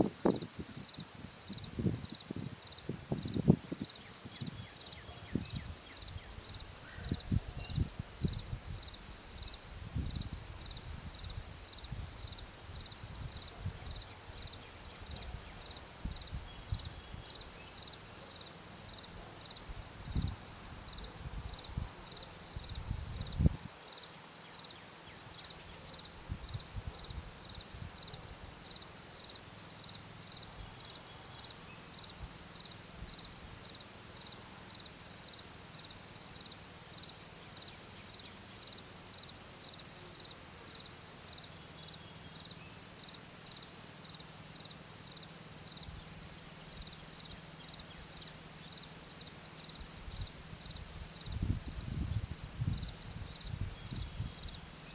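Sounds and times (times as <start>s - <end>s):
higher insect calls: 0.0s - 26.6s
insects chirping chorus: 0.0s - 54.9s.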